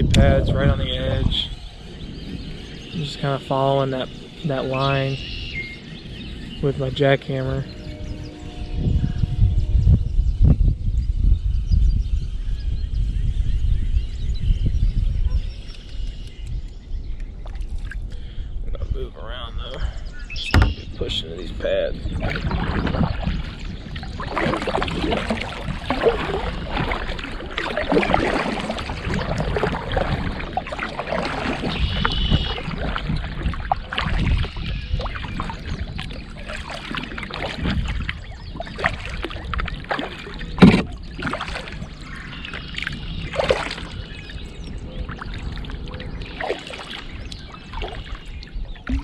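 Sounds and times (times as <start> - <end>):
lily pads scraping along hull: 0.5 - 9.8, 20.0 - 49.0
water swishing: 20.4 - 49.0
sharp knock: 20.5 - 21.0.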